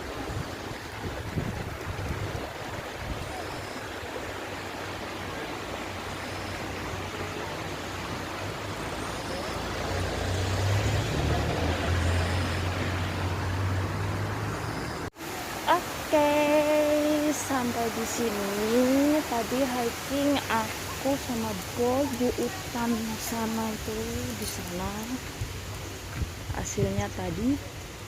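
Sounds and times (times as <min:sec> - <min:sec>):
vehicle engine humming: 0:05.3 - 0:26.1.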